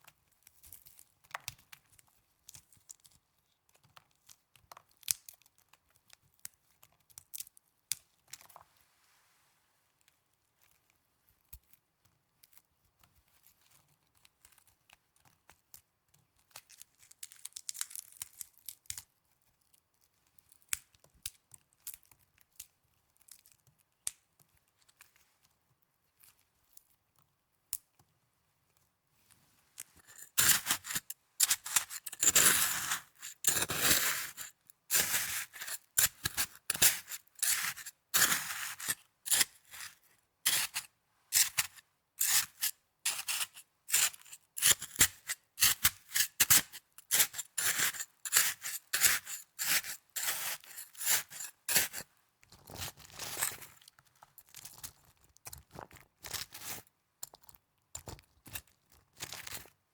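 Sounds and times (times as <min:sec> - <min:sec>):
soft rustle: 0:08.5 - 0:11.0, 0:28.6 - 0:33.7.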